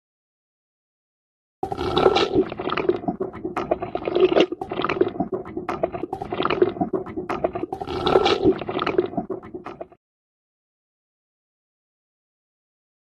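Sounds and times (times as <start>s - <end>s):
cattle munching feed: 1.6s - 9.9s.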